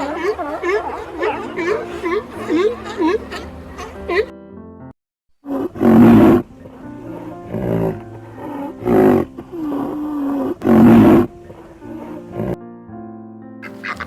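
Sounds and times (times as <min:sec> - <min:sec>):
background music: 0:00.0 - 0:04.9, 0:05.5 - 0:14.0
large animal roaring: 0:05.5 - 0:06.5, 0:07.1 - 0:12.6.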